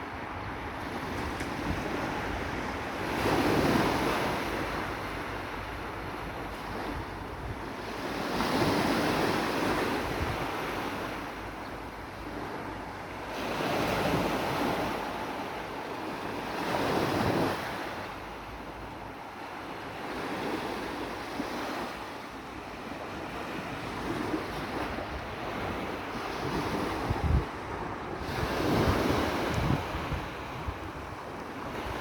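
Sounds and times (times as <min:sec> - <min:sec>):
wind buffeting microphone: 0:00.0 - 0:11.6, 0:22.9 - 0:32.0
sea waves breaking: 0:00.0 - 0:32.0.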